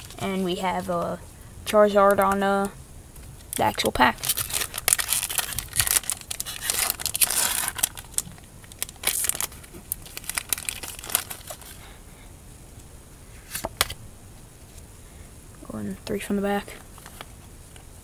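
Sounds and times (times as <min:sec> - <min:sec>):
foil wrapper tearing and crinkling: 0:03.5 - 0:11.8.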